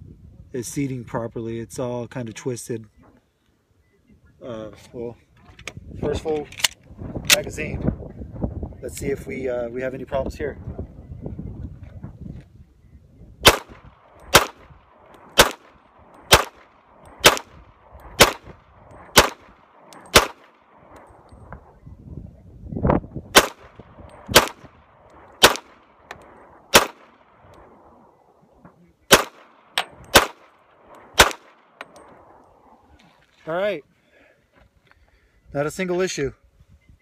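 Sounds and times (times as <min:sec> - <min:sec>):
pistol shots: 0:13.4 - 0:21.1, 0:23.3 - 0:27.8, 0:29.1 - 0:32.1.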